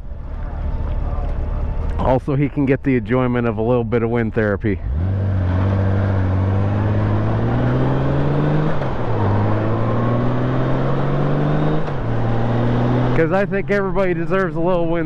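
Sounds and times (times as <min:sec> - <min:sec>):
motorcycle engine accelerating: 0:04.6 - 0:15.0.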